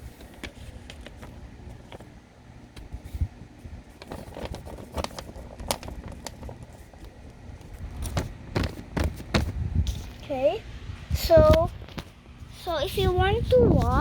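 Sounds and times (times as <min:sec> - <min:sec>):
objects clicking and tapping: 0:04.0 - 0:10.2.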